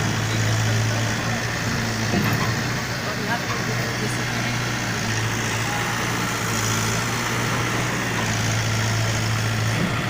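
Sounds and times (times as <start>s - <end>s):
bulldozer engine humming: 0.0s - 10.0s.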